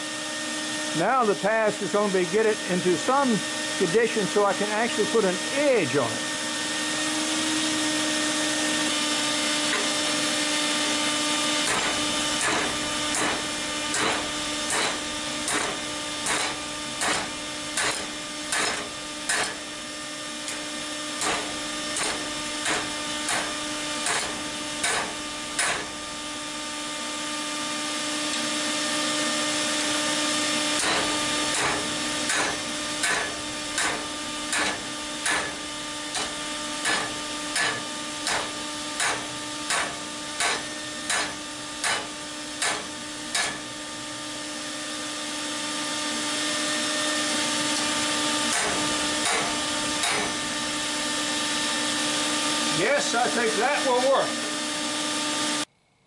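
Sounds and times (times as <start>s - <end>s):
steady hum: 0.0s - 55.7s
hammer ringing on anvil: 30.8s - 43.6s, 48.5s - 50.4s.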